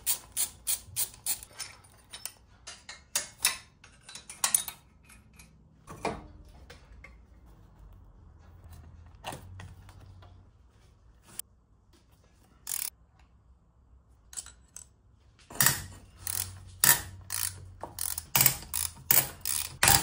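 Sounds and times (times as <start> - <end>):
metal tools and parts clinking: 0.0 - 6.3, 14.3 - 20.0.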